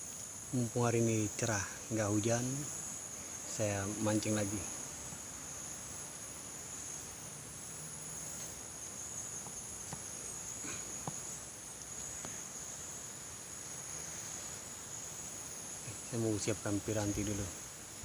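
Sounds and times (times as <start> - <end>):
insects trilling: 0.0 - 18.0
faint ticks: 8.2 - 8.6, 9.4 - 12.5.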